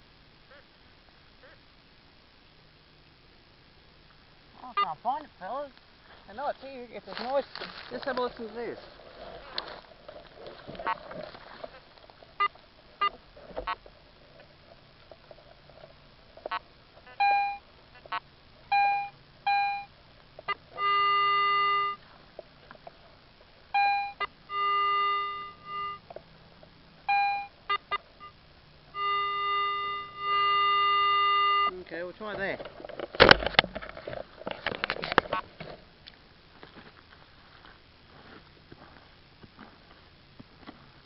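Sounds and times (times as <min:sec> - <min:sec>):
metal detector beeping: 0:04.6 - 0:05.0, 0:10.8 - 0:11.0, 0:16.5 - 0:22.0, 0:23.7 - 0:26.1, 0:27.1 - 0:31.8.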